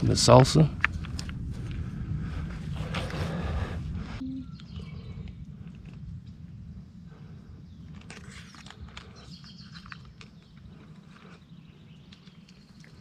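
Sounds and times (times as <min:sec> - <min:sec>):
low rumble: 0:00.0 - 0:11.9
bird chirps: 0:04.2 - 0:05.3, 0:07.6 - 0:12.8.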